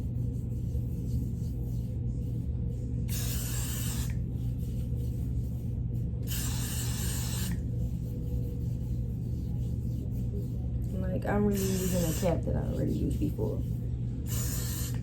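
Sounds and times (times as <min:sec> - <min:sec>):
aerosol spray hissing: 0:03.1 - 0:04.2, 0:06.2 - 0:07.6, 0:11.5 - 0:12.4, 0:14.3 - 0:15.0.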